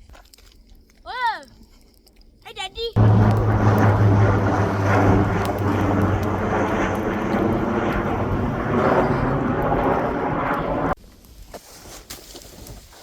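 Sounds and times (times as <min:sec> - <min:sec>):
snowmobile engine running: 0:03.0 - 0:11.0.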